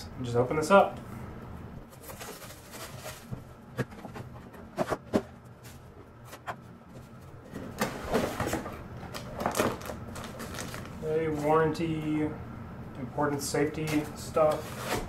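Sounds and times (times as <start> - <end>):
rustling of packaging and papers: 1.8 - 11.8, 13.7 - 15.0.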